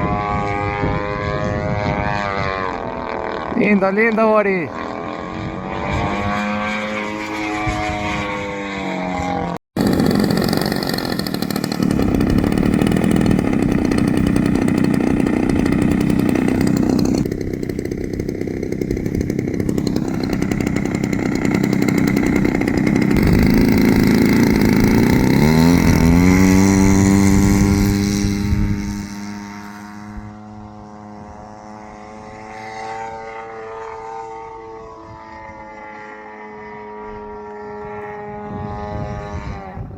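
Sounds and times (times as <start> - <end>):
model plane engine and propeller: 0.0 - 39.9.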